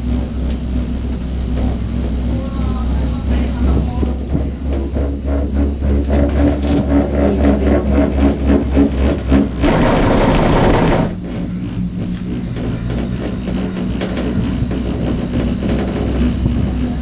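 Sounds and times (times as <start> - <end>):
cable car hum: 0.0 - 17.0
rushing clatter: 0.0 - 17.0
rattling clicks: 4.0 - 16.8.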